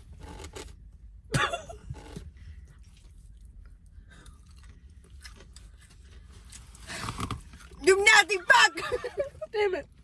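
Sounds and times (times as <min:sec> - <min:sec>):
faint chewing of food: 0:02.2 - 0:07.8.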